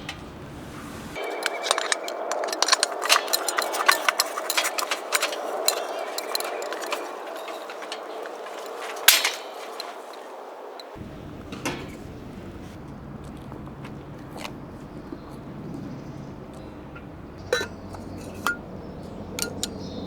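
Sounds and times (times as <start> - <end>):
utensils clinking against dishes: 1.2 - 12.2, 16.3 - 20.0.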